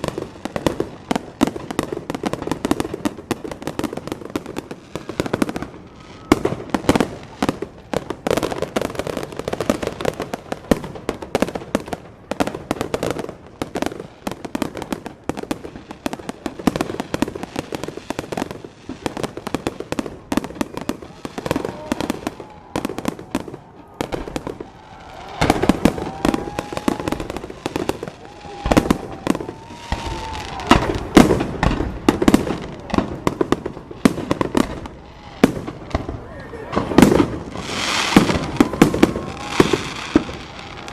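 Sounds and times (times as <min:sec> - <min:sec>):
fireworks popping and crackling: 0:00.0 - 0:40.9.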